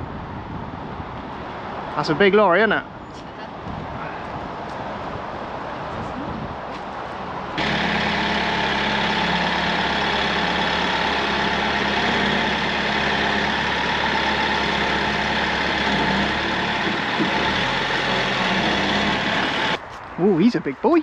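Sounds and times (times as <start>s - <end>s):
diesel lorry engine idling: 7.6s - 19.8s.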